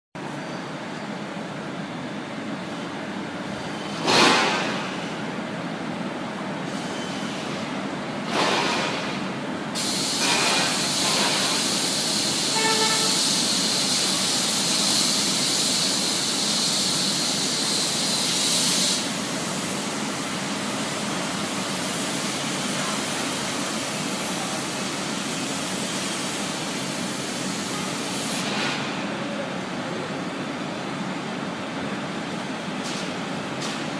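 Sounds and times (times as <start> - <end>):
industrial machinery hum: 0.2 - 33.9
brief tone: 6.8 - 7.4
loud hiss: 9.8 - 28.8.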